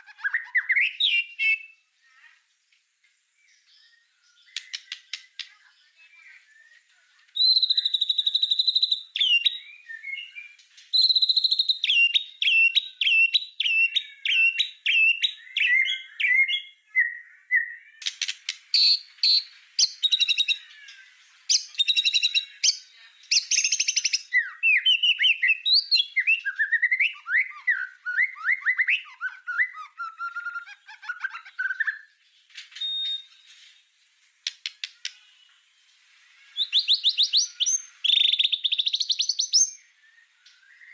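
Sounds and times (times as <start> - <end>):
bird singing: 0.0 - 40.9
sharp clicking bird notes: 4.4 - 5.7, 18.0 - 18.9, 34.4 - 35.3.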